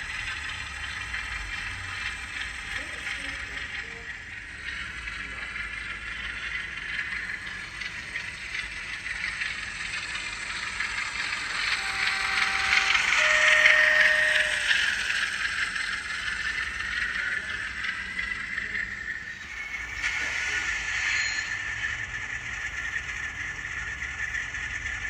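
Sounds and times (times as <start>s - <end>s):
diesel engine sound from speaker: 0.0s - 25.0s
model train rattling on track: 0.0s - 25.0s
two-note horn: 11.7s - 15.2s.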